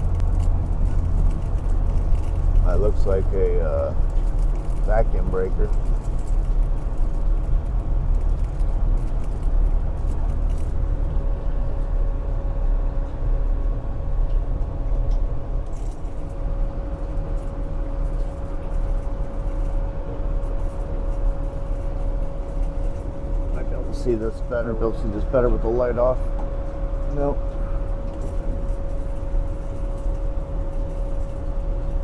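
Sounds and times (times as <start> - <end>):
hvac equipment rumble: 0.0 - 32.0
higher hum tone: 10.8 - 32.0.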